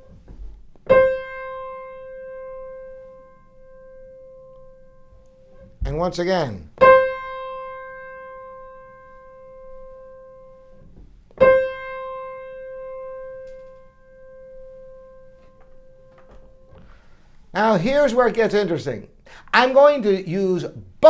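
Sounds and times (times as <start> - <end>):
piano note ringing: 0.0 - 6.1, 6.8 - 17.1.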